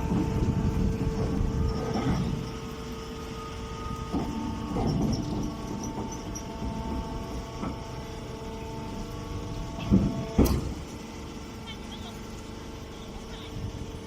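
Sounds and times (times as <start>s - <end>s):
baling machine humming: 0.0s - 14.0s
machine knocks: 9.8s - 10.8s.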